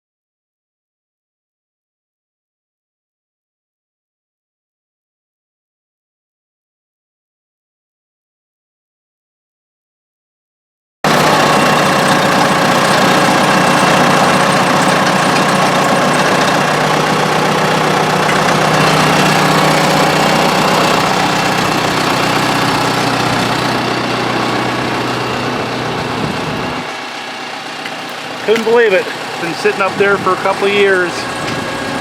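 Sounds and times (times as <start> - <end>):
diesel engine idling: 11.1 - 32.0.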